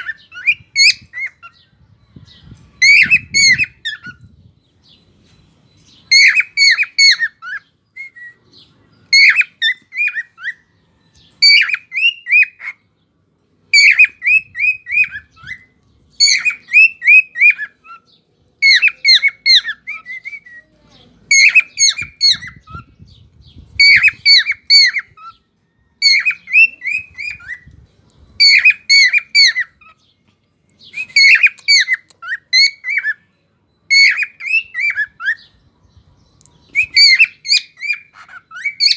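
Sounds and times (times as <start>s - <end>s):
cockatiel calling: 0.0s - 1.6s, 2.8s - 4.2s, 6.0s - 8.4s, 9.1s - 10.7s, 11.4s - 12.8s, 13.7s - 20.7s, 21.3s - 22.9s, 23.8s - 25.4s, 26.0s - 27.7s, 28.4s - 30.0s, 30.9s - 33.2s, 33.9s - 35.6s, 36.4s - 38.9s.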